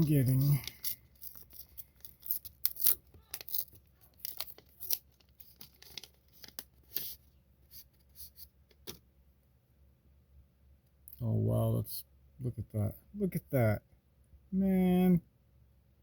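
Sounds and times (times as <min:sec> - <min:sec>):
card pack wrapper tearing and crinkling: 0:00.0 - 0:08.3.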